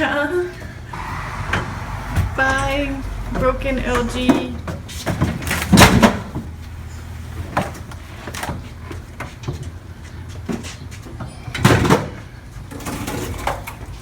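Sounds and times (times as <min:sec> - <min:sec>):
low steady hum: 0:00.0 - 0:09.2.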